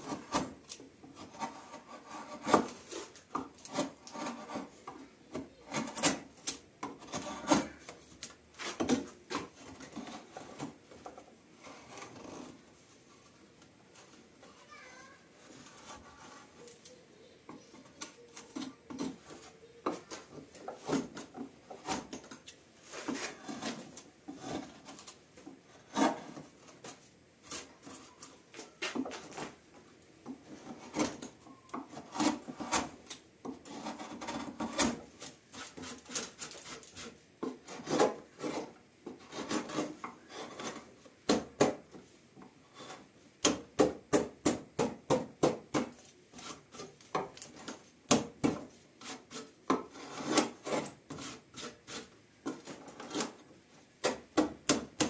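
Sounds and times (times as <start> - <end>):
hand tool rasping wood: 0.0 - 12.6, 17.6 - 25.0, 25.6 - 26.9, 30.5 - 41.8, 42.7 - 53.4.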